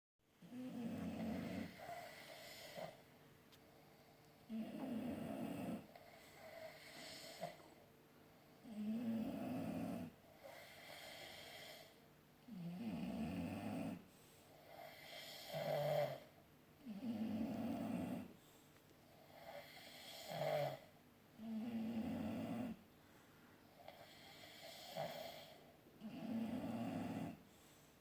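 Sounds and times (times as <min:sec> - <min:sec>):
person snoring: 0:00.4 - 0:03.0, 0:04.4 - 0:07.6, 0:08.6 - 0:14.0, 0:14.6 - 0:18.3, 0:19.3 - 0:22.8, 0:23.8 - 0:27.4.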